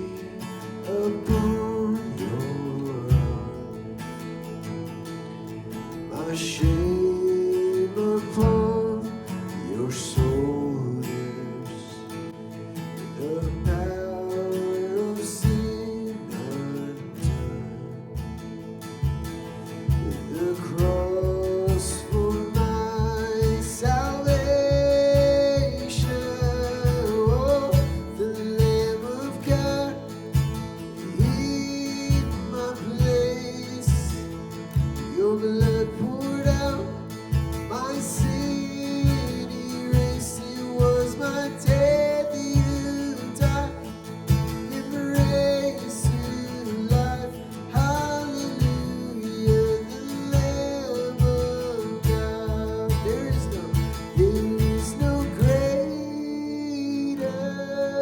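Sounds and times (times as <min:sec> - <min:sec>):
acoustic guitar: 0:00.0 - 0:58.0
steady beat: 0:13.6 - 0:14.1, 0:18.2 - 0:55.9.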